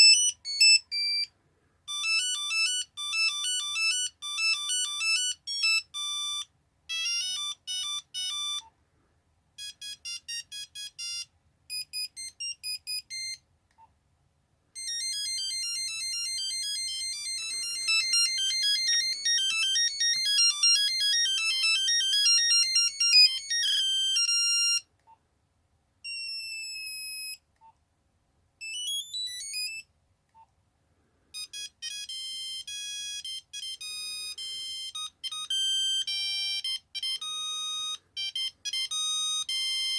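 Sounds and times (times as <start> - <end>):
monophonic ringtone beeping melodies: 0.0 - 1.3, 1.9 - 8.6, 9.6 - 13.4, 14.8 - 24.8, 28.6 - 29.8, 31.4 - 39.9.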